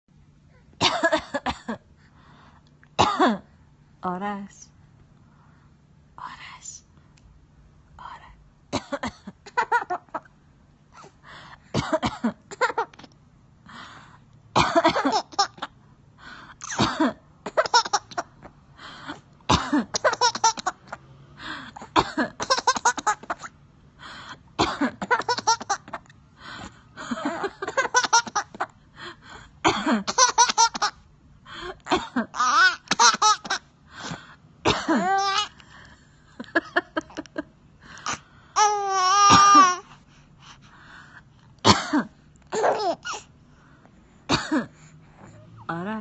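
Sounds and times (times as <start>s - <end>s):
woman coughing: 0.8s - 1.8s, 3.0s - 3.5s, 8.7s - 9.4s, 11.7s - 12.8s, 14.6s - 15.3s, 16.6s - 17.8s, 19.5s - 20.5s, 21.8s - 23.4s, 24.6s - 25.7s, 29.6s - 30.8s, 31.8s - 33.5s, 34.6s - 35.4s, 41.6s - 43.2s, 44.3s - 44.8s.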